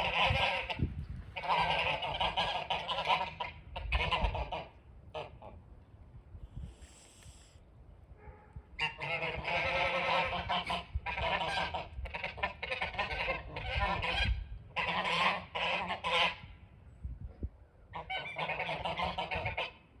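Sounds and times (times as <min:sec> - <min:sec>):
geese honking: 0:00.0 - 0:00.8, 0:01.4 - 0:05.6, 0:08.8 - 0:16.4, 0:18.0 - 0:19.8.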